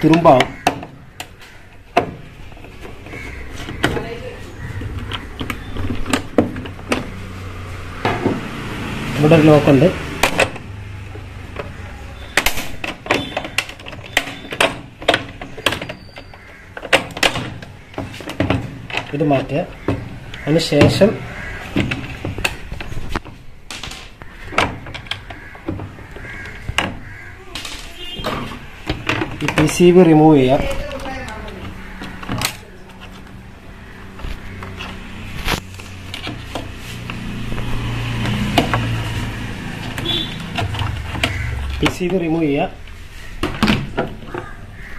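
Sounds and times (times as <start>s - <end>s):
plastic latch clicks and knocks: 0.0s - 4.1s, 11.5s - 21.1s, 21.7s - 33.4s, 39.8s - 42.2s.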